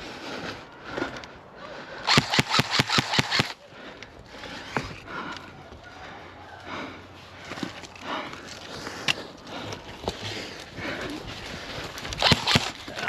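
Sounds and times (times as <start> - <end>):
airsoft gun firing rapidly: 2.1 - 3.6, 12.2 - 12.8.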